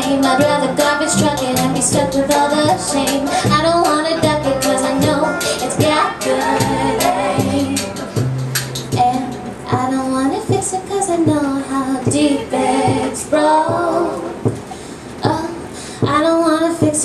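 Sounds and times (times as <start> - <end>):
women singing together: 0.0 - 8.1, 9.0 - 17.0
folk-pop band playing: 0.0 - 10.7.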